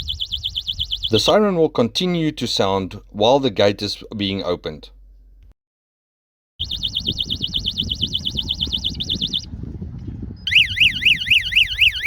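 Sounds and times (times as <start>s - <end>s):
high-pitched warbling siren: 6.6s - 9.5s, 10.5s - 12.0s
siren with slow sweeps: 6.6s - 9.5s, 10.5s - 12.0s.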